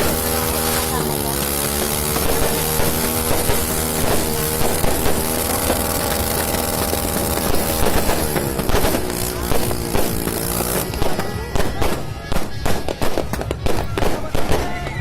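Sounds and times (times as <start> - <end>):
firework bangs and crackles: 0.0 - 15.0
music with singing: 9.3 - 15.0.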